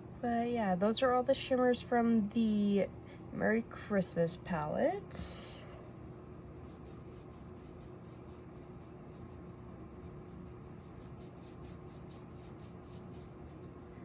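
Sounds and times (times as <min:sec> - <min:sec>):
faint steady hum: 0:00.0 - 0:14.0
soft rubbing on skin: 0:06.6 - 0:14.0.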